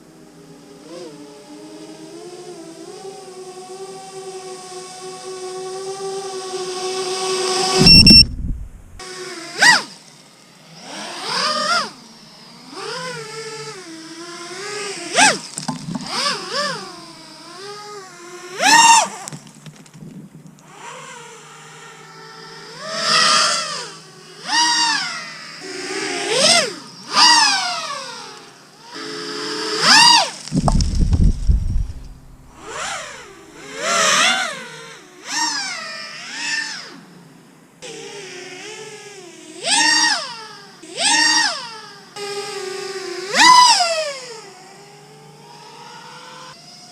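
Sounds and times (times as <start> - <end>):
drone motors whining: 7.5 - 9.0, 20.7 - 34.8
brief low rumble: 7.8 - 9.0, 30.6 - 32.8.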